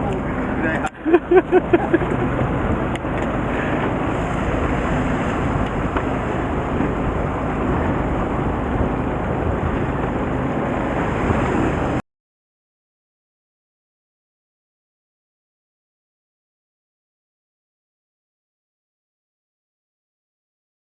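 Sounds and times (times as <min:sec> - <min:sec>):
boat engine running: 0:00.0 - 0:12.0
wind and water rushing: 0:00.0 - 0:12.0.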